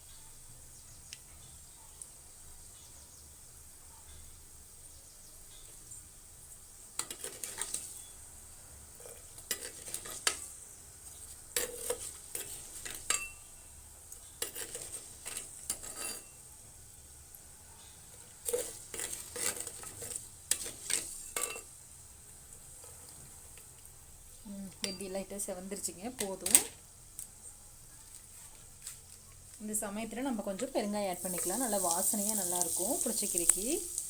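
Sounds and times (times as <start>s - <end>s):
faint sizzle: 0.0s - 34.0s
spoon scraping and clicking in pot: 7.0s - 8.0s, 9.0s - 10.5s, 11.6s - 13.4s, 14.2s - 16.4s, 18.2s - 21.7s.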